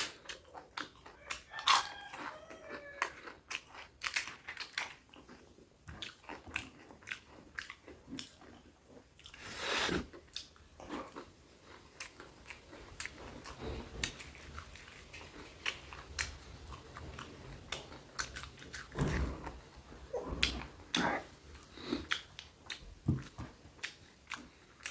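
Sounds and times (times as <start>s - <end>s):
person chewing food: 0.0s - 24.9s.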